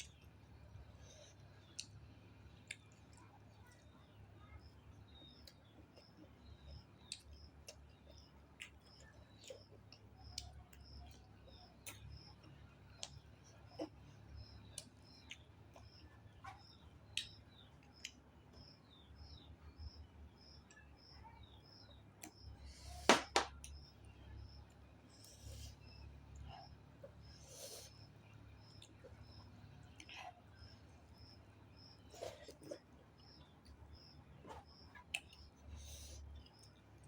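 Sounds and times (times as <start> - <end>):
soft chewing: 0.0 - 23.0, 23.6 - 37.0
sharp cracks: 23.1 - 23.6.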